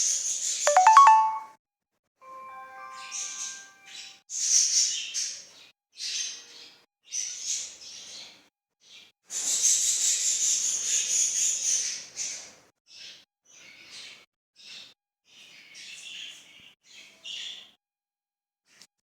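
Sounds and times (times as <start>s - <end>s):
small birds chirping: 10.2s - 17.8s.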